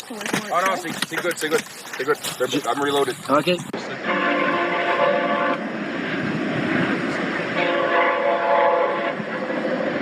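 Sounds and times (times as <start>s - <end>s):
steady rumbling noise: 0.7s - 10.0s
multi-tone horn blasts: 3.9s - 5.7s, 7.5s - 9.6s.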